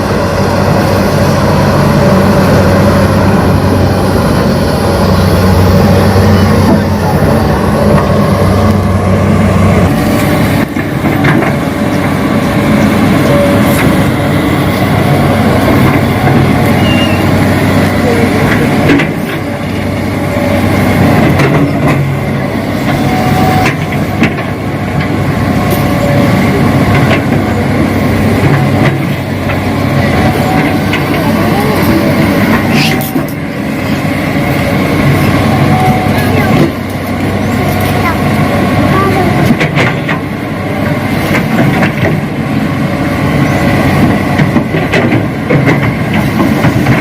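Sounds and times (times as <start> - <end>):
sharp clicks and knocks: 44.0 - 47.0.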